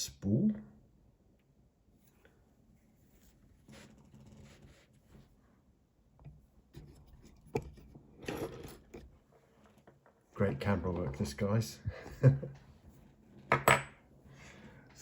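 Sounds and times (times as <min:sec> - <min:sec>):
light scraping and rubbing: 0:02.8 - 0:05.4, 0:06.7 - 0:09.8.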